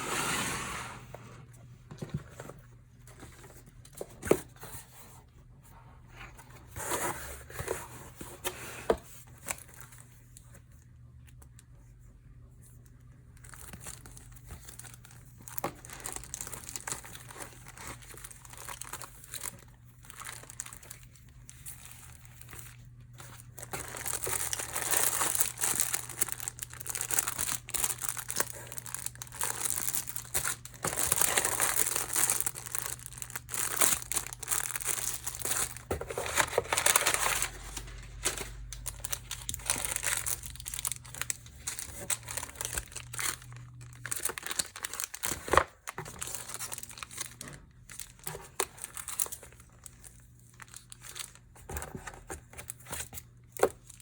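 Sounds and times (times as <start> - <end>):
packaging crinkling and rustling: 6.2 - 10.7, 13.3 - 54.0
packaging tearing: 23.4 - 47.4.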